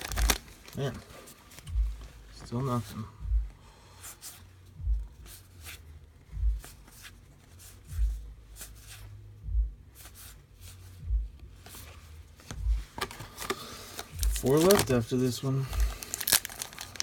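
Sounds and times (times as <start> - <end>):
dull low thump: 1.6 - 3.6, 4.8 - 5.2, 6.3 - 6.7, 7.9 - 8.3, 9.4 - 9.8, 11.0 - 11.4, 12.5 - 13.0, 14.2 - 14.5.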